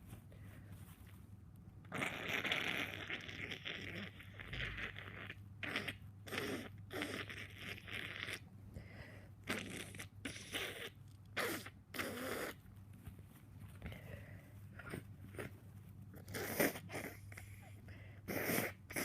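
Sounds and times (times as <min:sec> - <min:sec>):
person blowing nose: 0:18.3 - 0:19.0.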